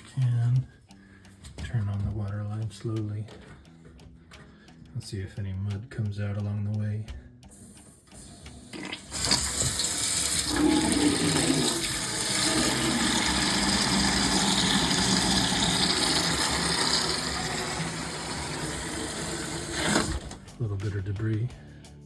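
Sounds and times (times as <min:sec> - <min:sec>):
water gushing from a hose: 0:08.7 - 0:20.4.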